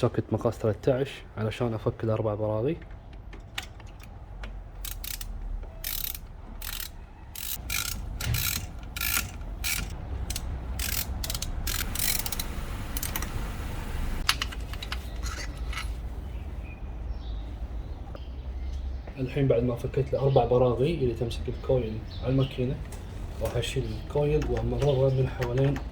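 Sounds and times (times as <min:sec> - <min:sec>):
ratchet wrench clicking: 0:04.8 - 0:13.5.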